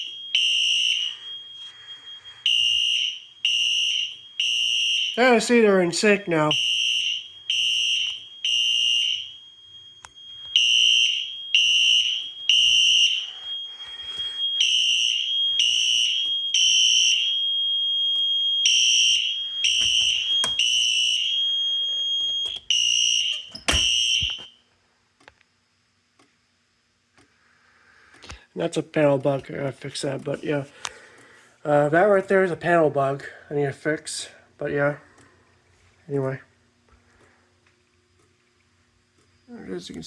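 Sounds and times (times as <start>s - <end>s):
thin steady high tone: 0.0s - 24.6s, 39.3s - 40.0s
fire alarm horn blasts: 0.0s - 24.7s.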